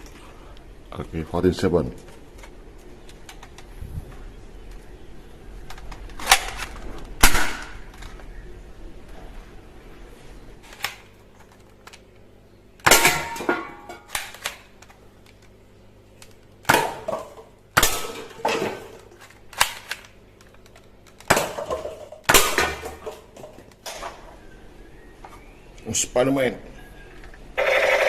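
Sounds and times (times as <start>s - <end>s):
toy gun firing: 27.6s - 28.0s.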